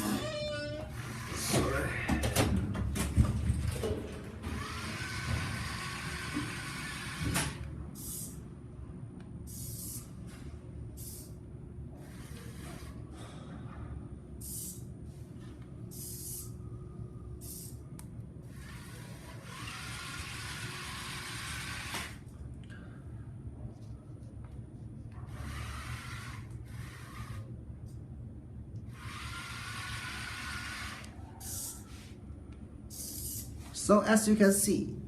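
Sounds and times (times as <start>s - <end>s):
gear motors whirring: 0.0s - 2.0s, 4.4s - 7.7s, 18.5s - 22.2s, 25.3s - 27.5s, 28.9s - 31.8s.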